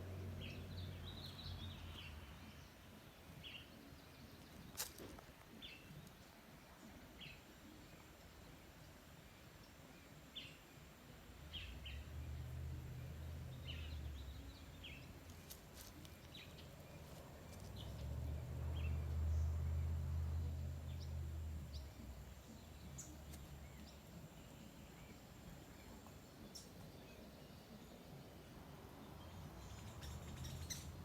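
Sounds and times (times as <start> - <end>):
birds chirping: 12.9 - 31.0.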